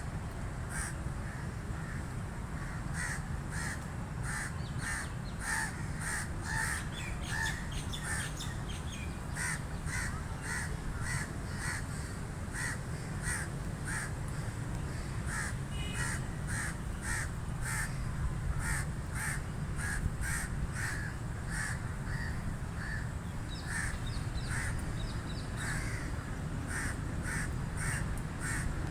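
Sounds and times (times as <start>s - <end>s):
crows cawing: 2.6s - 6.9s, 9.4s - 14.2s, 14.9s - 24.8s, 25.6s - 28.8s.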